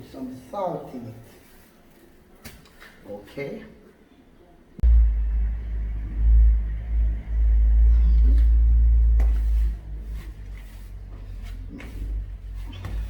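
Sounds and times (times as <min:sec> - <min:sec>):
loud low rumble: 0:04.8 - 0:13.0.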